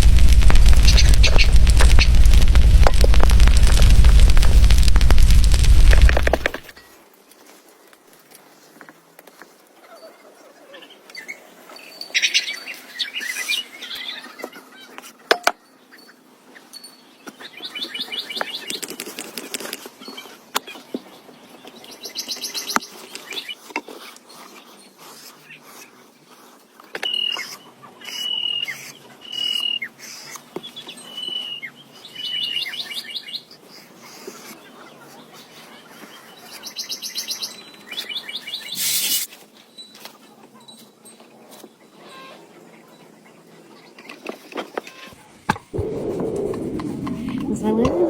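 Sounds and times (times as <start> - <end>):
sharp clicks: 0.0 - 6.7.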